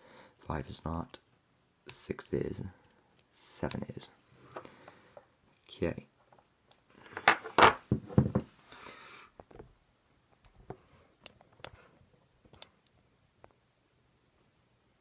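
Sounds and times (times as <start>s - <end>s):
lock parts knocking and rattling: 7.1s - 8.5s.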